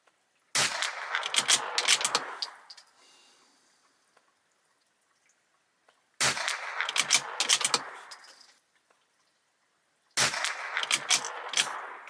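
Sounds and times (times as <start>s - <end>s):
rifle shots: 0.6s - 2.6s, 6.2s - 8.2s, 10.2s - 12.0s.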